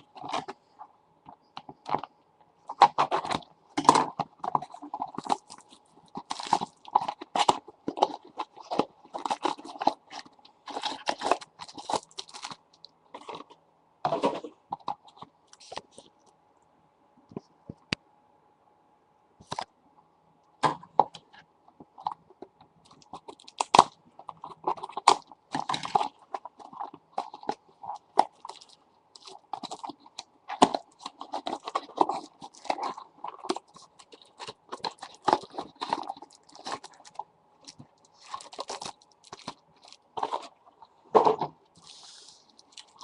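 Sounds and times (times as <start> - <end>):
card box packaging crinkling: 2.7 - 16.1, 22.8 - 43.0.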